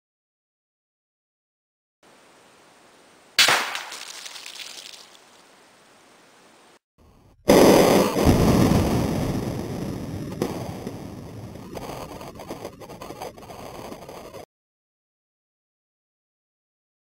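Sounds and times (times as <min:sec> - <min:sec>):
air rifle shots: 0:03.4 - 0:04.0.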